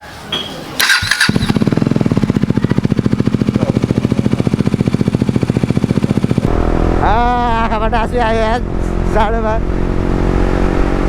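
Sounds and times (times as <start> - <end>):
motorcycle engine starting and idling: 0.7 - 6.5.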